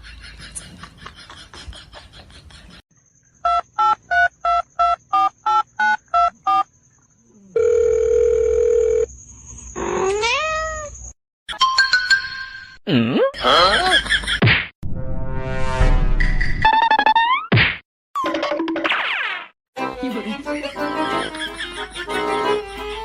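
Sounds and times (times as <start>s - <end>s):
steady phone tone: 7.6s - 9.1s
cat meowing: 10.0s - 11.0s.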